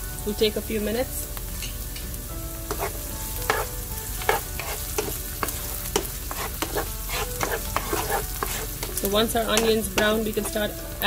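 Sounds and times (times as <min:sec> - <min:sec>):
onions sizzling in oil: 0:00.0 - 0:11.0
utensil scraping a pan: 0:02.7 - 0:10.6.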